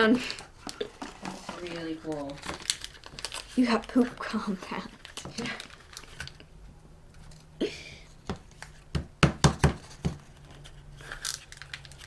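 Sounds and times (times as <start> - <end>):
toy packaging rustling: 0.0 - 6.5, 9.8 - 12.0
sharp knocks on tabletop: 8.3 - 10.2.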